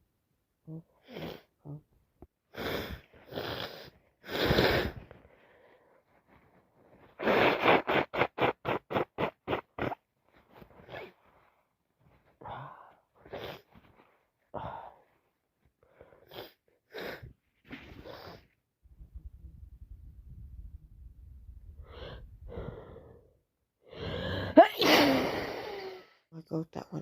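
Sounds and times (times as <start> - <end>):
sniffs and gasps: 2.5 - 11.6, 15.8 - 18.6, 21.8 - 26.3
woman sneezing: 24.6 - 25.7.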